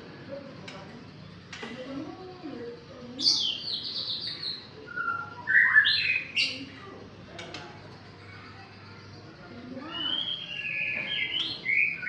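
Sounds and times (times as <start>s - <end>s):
young bird singing: 3.1s - 6.7s, 9.8s - 12.0s.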